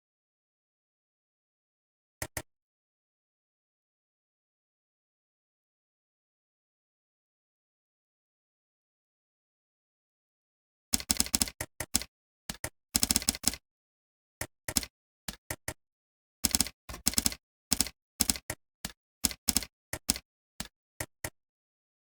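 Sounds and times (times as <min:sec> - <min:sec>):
typing on computer keyboard: 0:11.0 - 0:13.6, 0:14.7 - 0:15.8, 0:16.4 - 0:18.6, 0:19.2 - 0:21.4.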